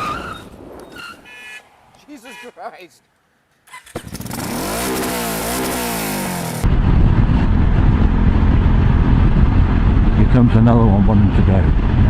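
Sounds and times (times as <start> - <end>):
motorcycle engine accelerating: 3.7 - 12.0.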